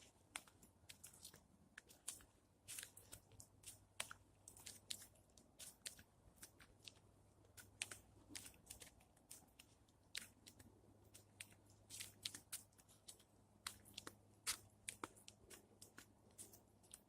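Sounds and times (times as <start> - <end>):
faint crunching and clicking: 0.0 - 17.0.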